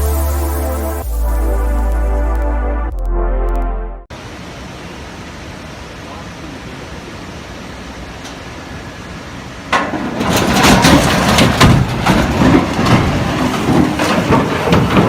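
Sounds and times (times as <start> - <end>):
banging and crushing impacts: 9.7 - 15.0
metal and wood crunching: 9.8 - 15.0.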